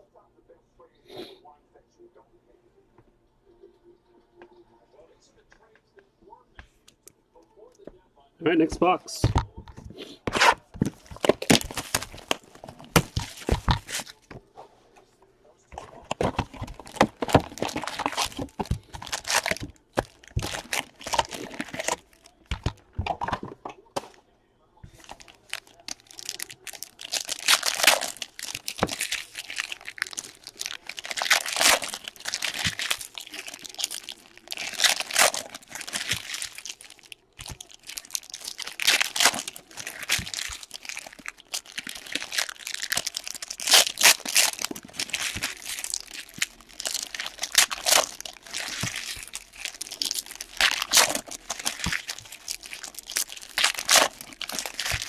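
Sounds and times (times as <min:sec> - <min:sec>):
plastic wrapping tearing and crinkling: 0:10.3 - 0:14.3, 0:15.8 - 0:23.5, 0:24.9 - 0:55.0.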